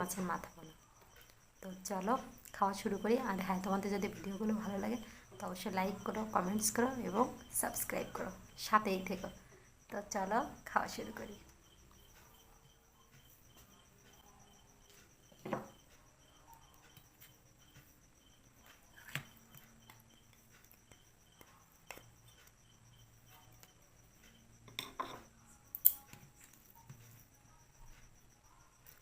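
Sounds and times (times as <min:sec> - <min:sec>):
crickets chirping: 0:00.0 - 0:29.0.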